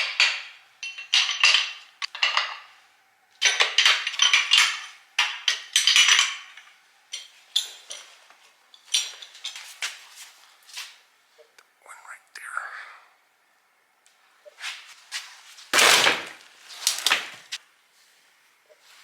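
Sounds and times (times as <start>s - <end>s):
metal engine parts clinking: 0.0s - 2.7s, 3.4s - 8.2s.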